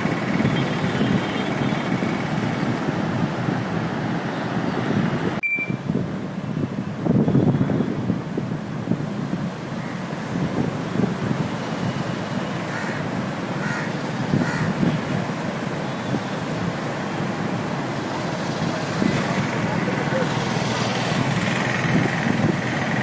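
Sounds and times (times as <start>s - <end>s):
steady background noise: 0.0s - 23.0s
crow cawing: 12.7s - 13.0s, 13.6s - 14.8s.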